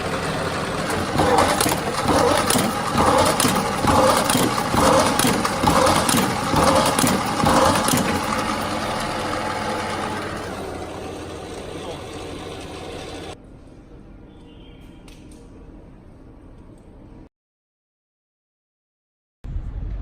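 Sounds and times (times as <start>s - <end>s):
crunching drill strokes: 0.0s - 13.4s
paper drilling machine running: 0.0s - 13.4s.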